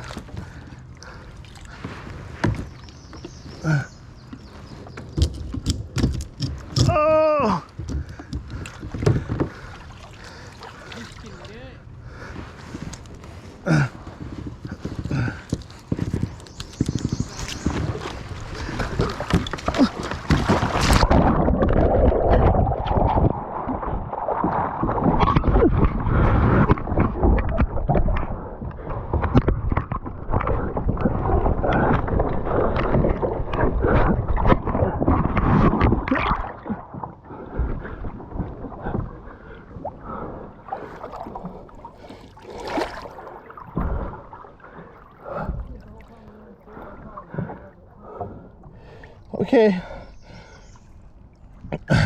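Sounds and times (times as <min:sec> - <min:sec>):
water splashing and churning: 0:00.0 - 0:52.0
gurgling on microphone: 0:06.4 - 0:50.8, 0:51.6 - 0:52.0.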